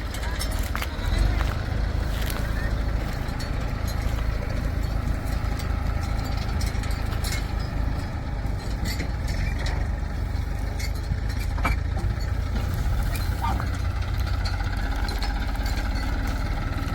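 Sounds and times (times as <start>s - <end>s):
diesel engine running: 0.0s - 16.9s
light clicks and clinks: 0.0s - 16.9s.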